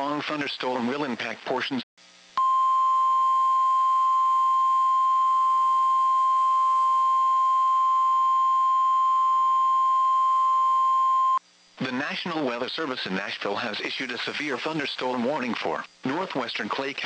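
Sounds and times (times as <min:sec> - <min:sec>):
steady alarm tone: 0:02.4 - 0:11.4.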